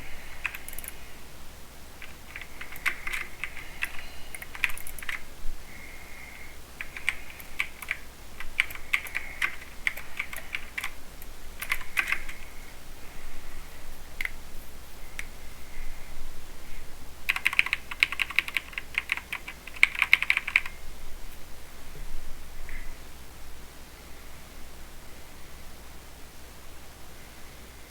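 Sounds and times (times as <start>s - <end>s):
typing on mechanical keyboard: 0.4s - 1.0s, 2.0s - 5.2s, 6.8s - 12.5s, 17.3s - 20.8s.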